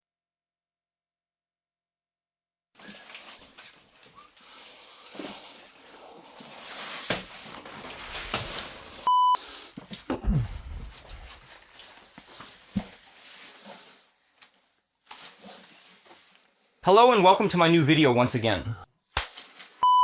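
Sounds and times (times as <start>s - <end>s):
censor bleep: 9.1s - 9.4s.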